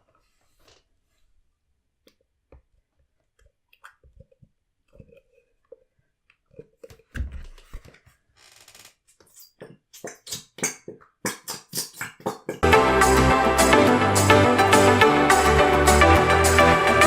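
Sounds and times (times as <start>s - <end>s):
glue bottle squelching: 9.2s - 12.6s
electronic music: 12.6s - 17.0s.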